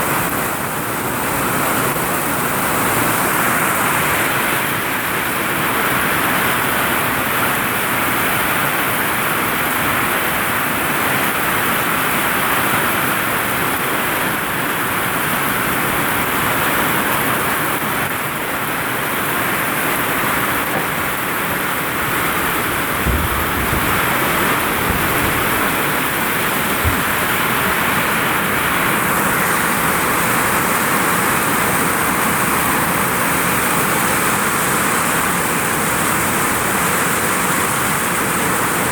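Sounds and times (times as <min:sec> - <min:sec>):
heavy rain on a roof: 0:00.0 - 0:38.9
low thumps: 0:22.0 - 0:28.8.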